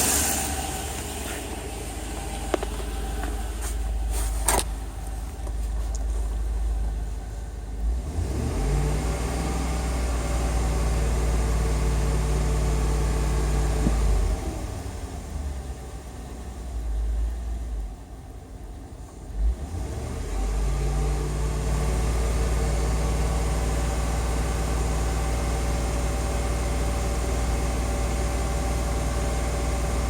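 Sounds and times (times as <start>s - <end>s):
steady hum: 0.0s - 8.0s
engine low rumble: 0.0s - 30.0s.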